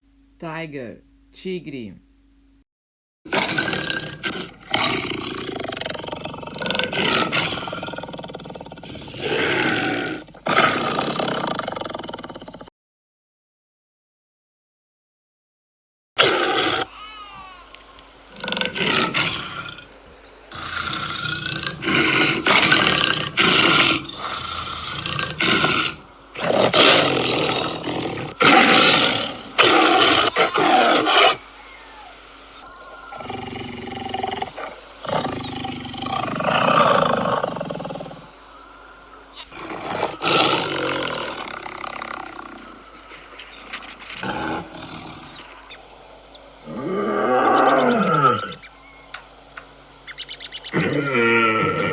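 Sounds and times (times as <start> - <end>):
tiger roaring: 3.3 - 12.7, 18.3 - 32.2, 33.1 - 38.3, 39.3 - 43.3, 44.2 - 45.8, 46.6 - 48.6, 50.7 - 51.9.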